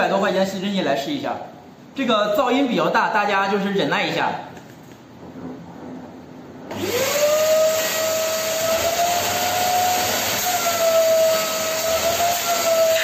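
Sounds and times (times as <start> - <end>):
vacuum cleaner motor whine: 6.7 - 13.0.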